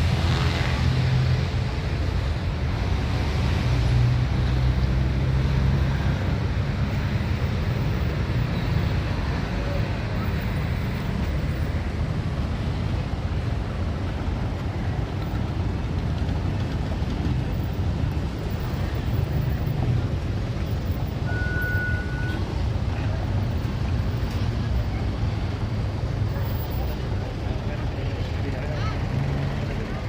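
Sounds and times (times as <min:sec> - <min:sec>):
bus engine and road noise: 0:00.0 - 0:30.0
brief high tone: 0:21.2 - 0:22.4.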